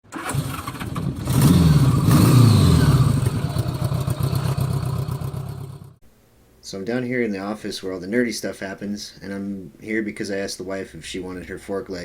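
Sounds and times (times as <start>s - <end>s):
motorcycle engine revving: 0.1s - 6.0s.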